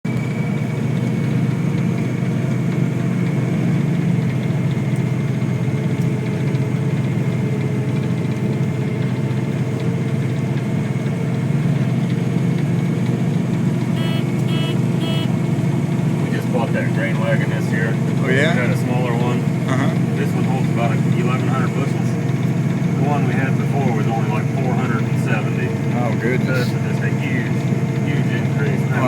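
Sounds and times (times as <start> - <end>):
tractor engine droning: 0.1 - 29.0
short beeps: 14.0 - 15.4.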